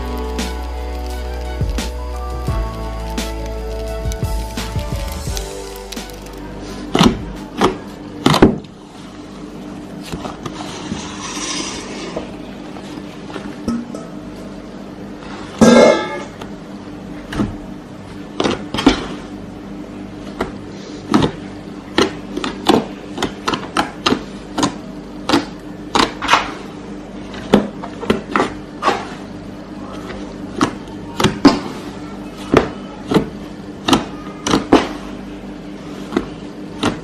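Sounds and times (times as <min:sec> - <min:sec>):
slime crackling and popping: 0:00.0 - 0:08.8.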